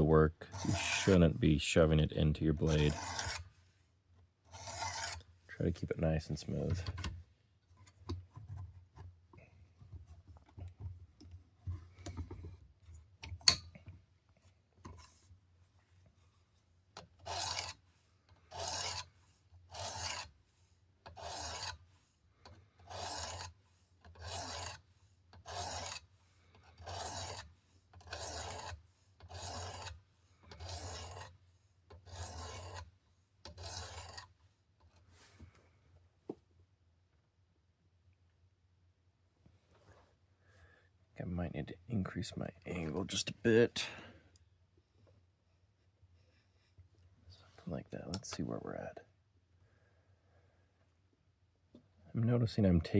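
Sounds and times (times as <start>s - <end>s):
sharpening stone scraping knife blade: 0.5s - 1.2s, 2.6s - 3.4s, 4.5s - 5.2s, 17.3s - 17.8s, 18.5s - 19.1s, 19.7s - 20.3s, 21.1s - 21.8s, 22.9s - 23.6s, 24.2s - 24.8s, 25.4s - 26.0s, 26.8s - 30.0s, 30.6s - 31.3s, 32.1s - 32.8s, 33.5s - 34.3s.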